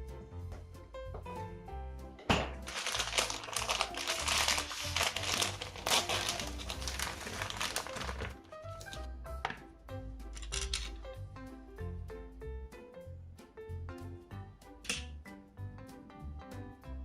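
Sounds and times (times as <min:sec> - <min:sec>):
background music: 0:00.0 - 0:17.0
crinkling crackling noise: 0:02.6 - 0:09.1.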